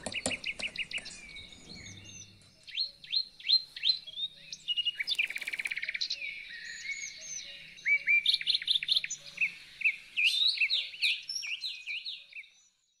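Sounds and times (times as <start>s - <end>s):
fast rattling bird trill: 0.0s - 4.0s, 4.6s - 6.2s
birds chirping: 0.0s - 13.0s.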